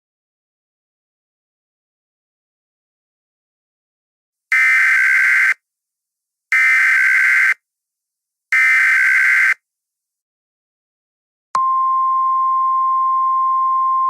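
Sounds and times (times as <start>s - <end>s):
buzzing two-tone data bursts: 4.5s - 5.6s.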